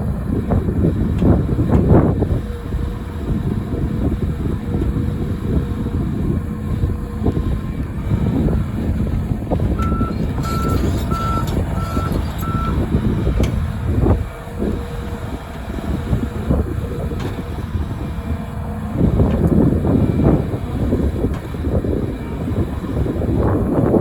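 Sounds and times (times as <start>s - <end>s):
excavator diesel engine running: 0.0s - 24.0s
reversing alarm beeps: 9.8s - 12.9s.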